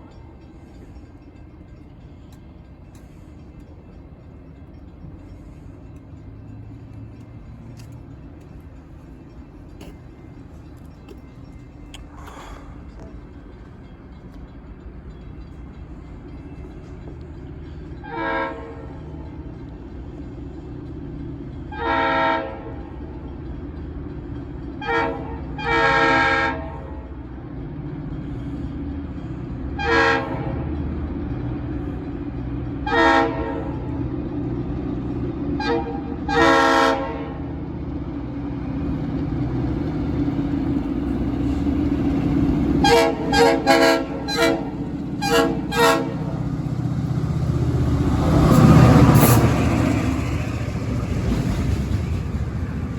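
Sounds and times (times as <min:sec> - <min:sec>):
locomotive engine rumble: 0:00.0 - 0:52.9
locomotive horn blasts: 0:18.0 - 0:19.3, 0:21.7 - 0:22.9, 0:24.8 - 0:27.1, 0:29.8 - 0:30.8, 0:32.8 - 0:33.9, 0:35.6 - 0:37.5, 0:42.8 - 0:46.6.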